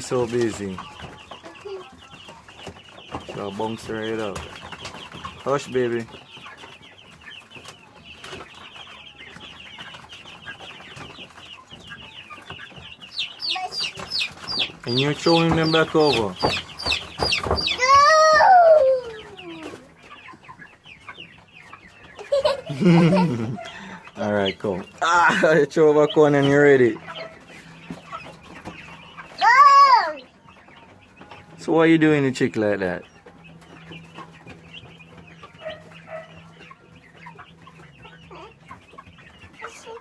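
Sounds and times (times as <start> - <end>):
chickens squawking and clucking: 0.0 - 40.0.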